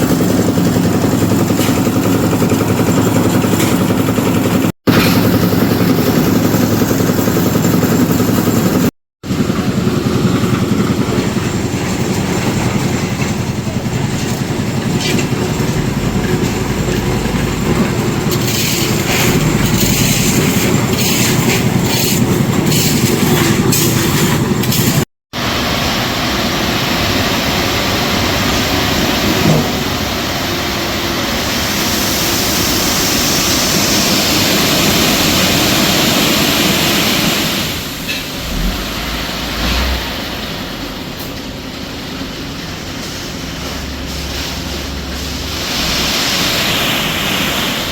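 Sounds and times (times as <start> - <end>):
construction machinery engine clattering: 0.0 - 25.0, 34.4 - 45.7.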